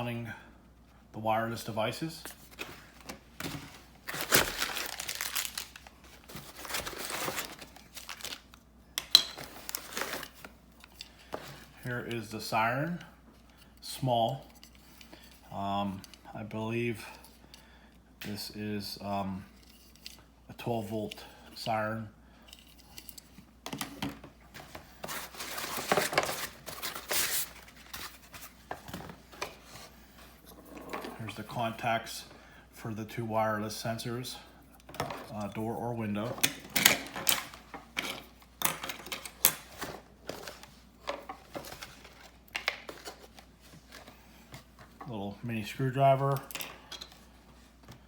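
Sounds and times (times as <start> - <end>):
packaging rustling and tearing: 2.5 - 8.6, 9.3 - 11.0, 25.0 - 29.2
packaging crinkling: 4.0 - 8.6, 9.3 - 10.5.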